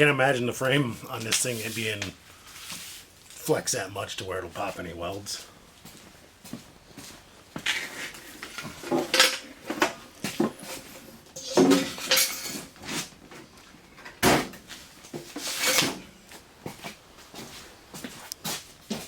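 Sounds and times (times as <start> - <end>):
steel tools clanking: 11.4 - 12.8.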